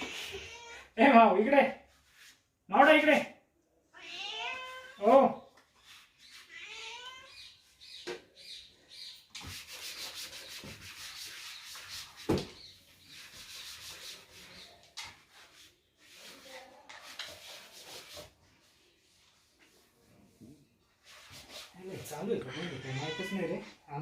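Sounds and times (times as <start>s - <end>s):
rubbing and scraping on a surface: 1.8s - 2.6s, 4.5s - 7.9s, 9.0s - 24.0s.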